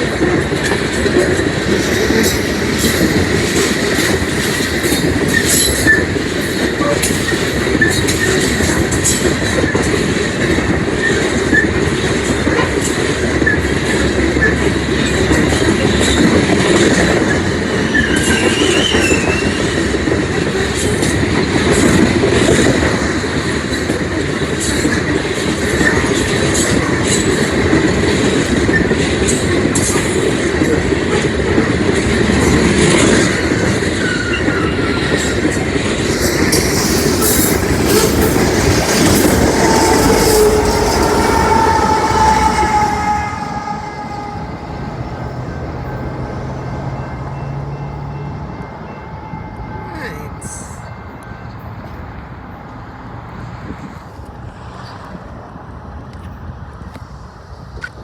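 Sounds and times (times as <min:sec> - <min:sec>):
wheels clicking over rail joints: 0:00.0 - 0:47.1
train wheels rumbling on rails: 0:00.0 - 0:58.0
wheel squeal: 0:00.7 - 0:09.9, 0:17.8 - 0:19.8, 0:33.9 - 0:45.3.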